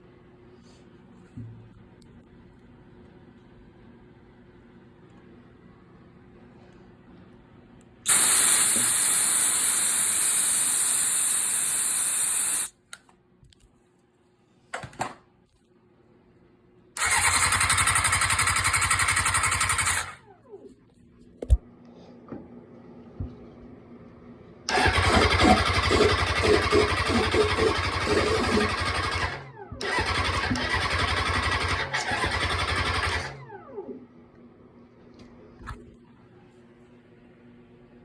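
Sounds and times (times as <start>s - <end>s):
spray can hissing: 8.1s - 12.7s
starter motor cranking engine: 8.1s - 12.7s, 17.0s - 20.2s, 24.7s - 33.5s.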